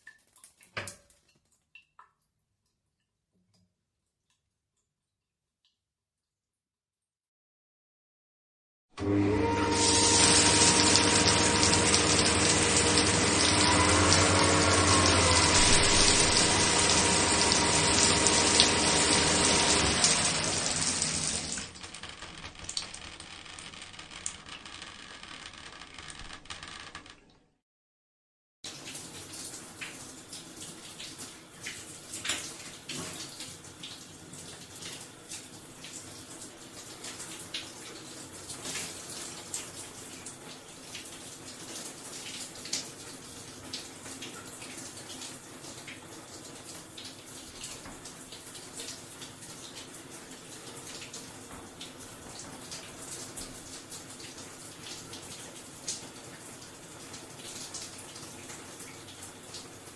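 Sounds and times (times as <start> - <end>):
small splashes and drips: 0.0 - 5.9, 10.0 - 23.1, 28.7 - 59.9
shower water hissing: 9.7 - 21.7.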